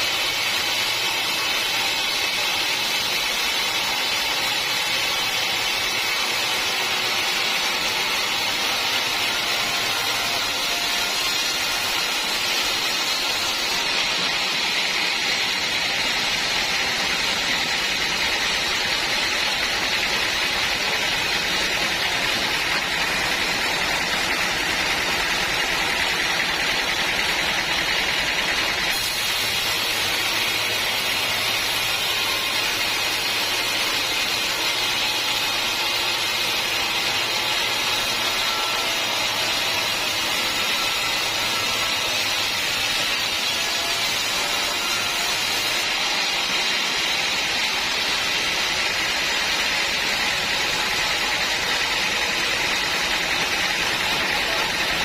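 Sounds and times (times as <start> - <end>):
sawmill saw cutting wood: 0.0 - 55.0.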